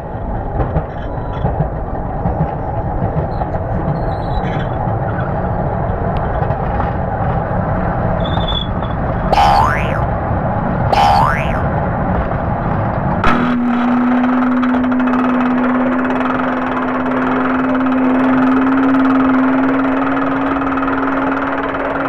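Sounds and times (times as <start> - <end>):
cartoon rising whistle: 9.4 - 10.0.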